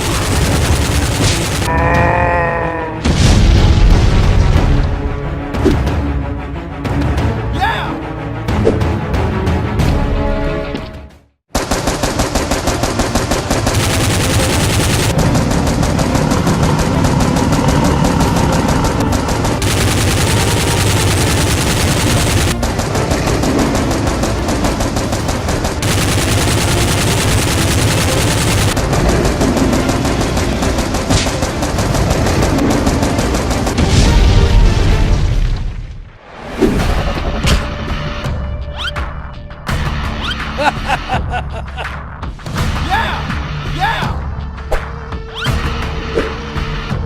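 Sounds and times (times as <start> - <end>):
rapid machine-gun fire: 0.0 - 1.7, 11.5 - 34.2
music: 0.0 - 47.0.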